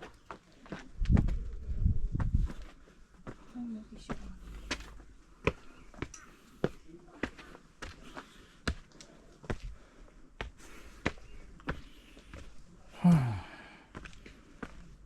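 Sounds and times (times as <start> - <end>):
footsteps in flip-flops: 0.0 - 1.6
out-of-breath sigh: 13.0 - 14.0.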